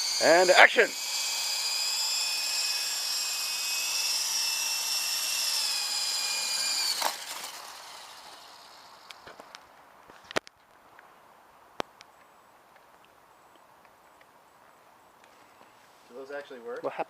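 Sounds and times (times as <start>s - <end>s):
toy helicopter rotor whining: 0.0s - 9.5s.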